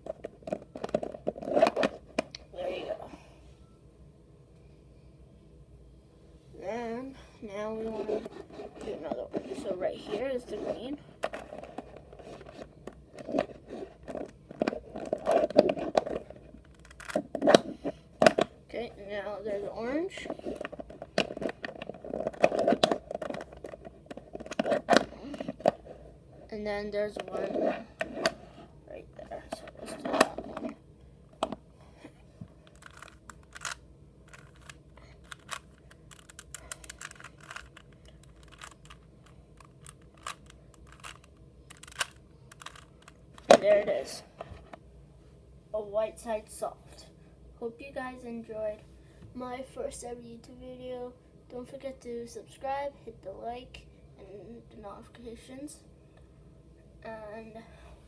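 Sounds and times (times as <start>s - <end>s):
plastic cube layers clicking: 32.7s - 39.0s, 39.6s - 43.5s.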